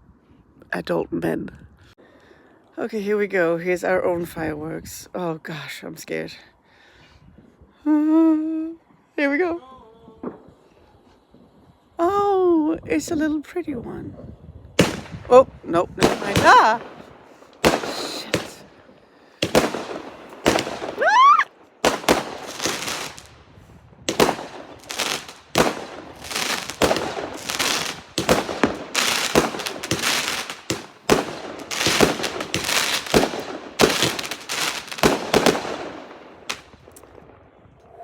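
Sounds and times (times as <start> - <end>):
fireworks bangs and crackling: 8.9 - 13.0, 14.7 - 37.8
rising firework whistle: 20.8 - 21.5.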